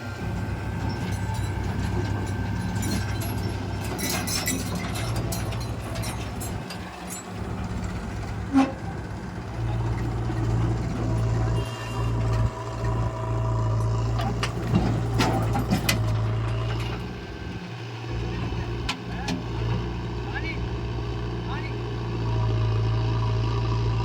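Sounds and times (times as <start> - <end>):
heavy diesel engine running: 0.0 - 24.0
metallic knocks and clanks: 0.8 - 8.0.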